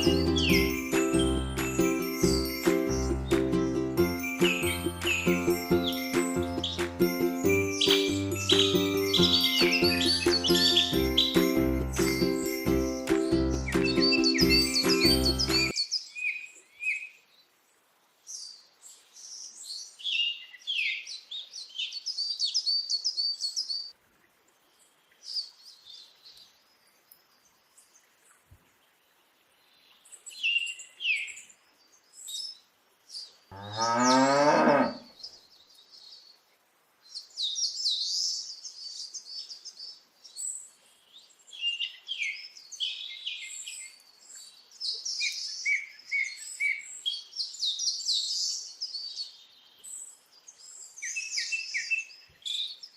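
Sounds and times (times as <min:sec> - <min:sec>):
small birds chirping: 0:00.0 - 0:52.9
cow mooing: 0:33.5 - 0:35.1.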